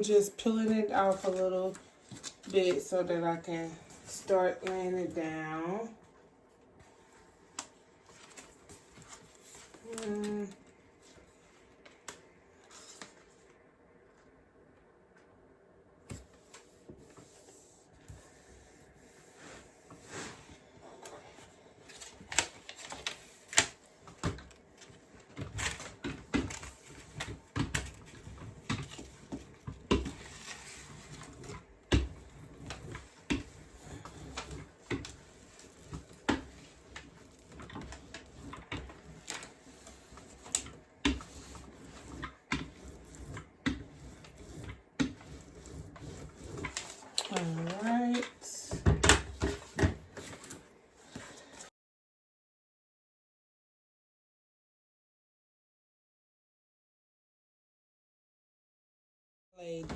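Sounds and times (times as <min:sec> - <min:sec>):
sticker paper rustling and crackling: 0:00.4 - 0:02.9, 0:07.6 - 0:10.6, 0:20.9 - 0:51.2.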